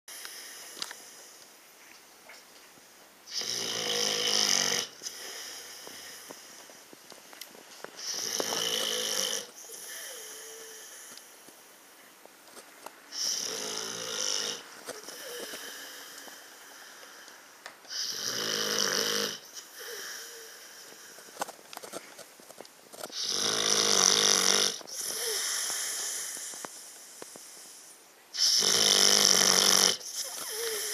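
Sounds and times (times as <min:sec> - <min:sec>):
loud raspy snore: 0:03.3 - 0:05.5, 0:08.0 - 0:10.6, 0:13.2 - 0:15.8, 0:17.9 - 0:20.3, 0:23.2 - 0:26.4, 0:28.4 - 0:30.9.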